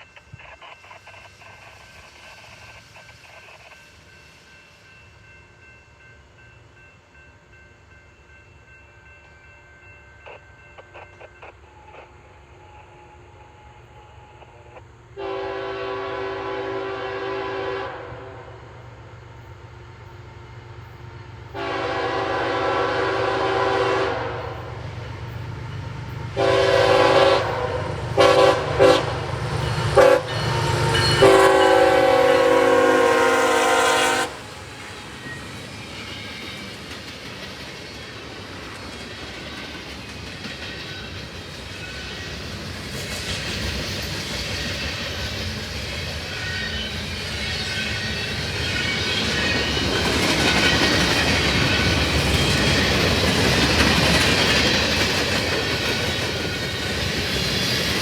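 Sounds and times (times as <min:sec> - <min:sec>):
freight train cars rumbling past: 0:00.0 - 0:58.0
locomotive air horn: 0:15.2 - 0:18.6, 0:21.6 - 0:24.6, 0:26.4 - 0:34.6.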